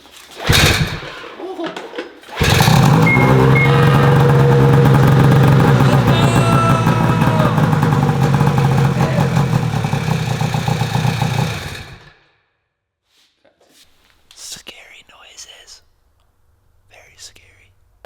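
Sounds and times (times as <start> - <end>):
snowmobile engine running: 0.5 - 1.0, 2.4 - 12.1.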